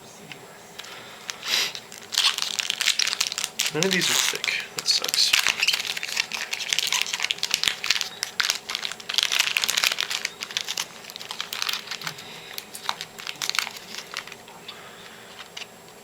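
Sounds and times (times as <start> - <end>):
foil wrappers crinkling: 0.8 - 16.0.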